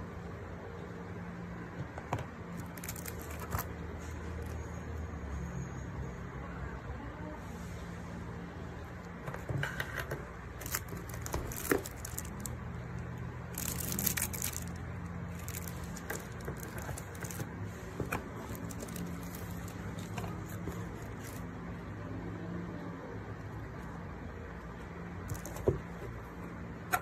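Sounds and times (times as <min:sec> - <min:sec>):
handling clicks and crinkling: 0:01.8 - 0:04.6, 0:09.0 - 0:21.5, 0:25.2 - 0:26.3.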